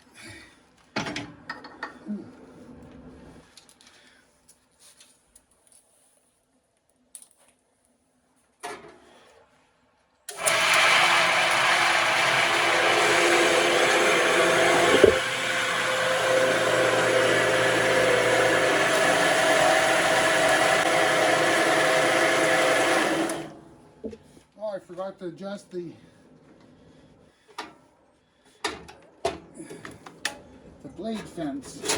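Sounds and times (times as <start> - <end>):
band saw running: 10.3 - 23.6.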